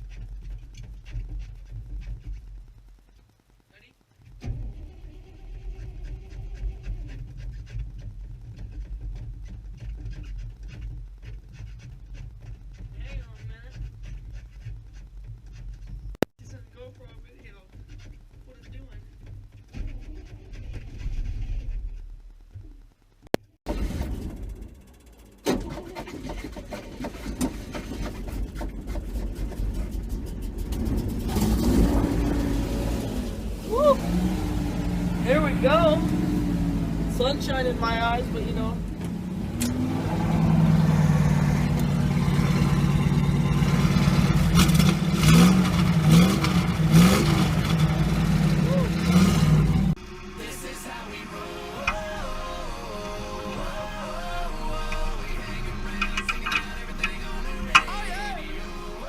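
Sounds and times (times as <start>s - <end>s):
car engine idling: 22.0s - 59.0s.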